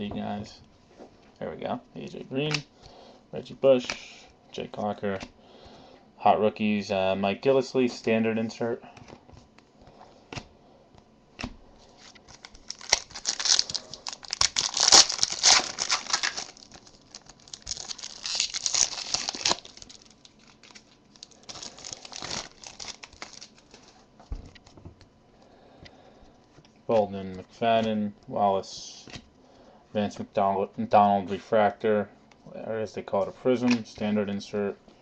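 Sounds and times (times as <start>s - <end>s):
wrapper tearing and crinkling: 12.3s - 24.0s.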